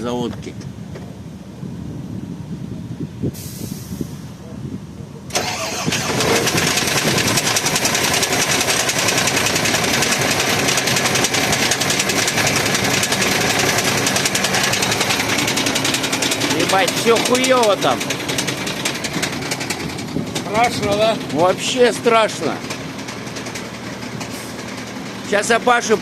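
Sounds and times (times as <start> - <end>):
diesel truck engine knocking: 6.1 - 26.0.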